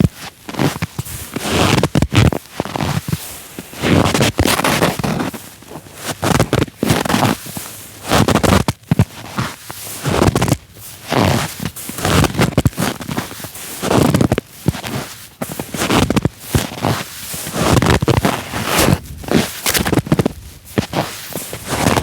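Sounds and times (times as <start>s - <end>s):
footsteps crunching in snow: 0.0s - 22.0s.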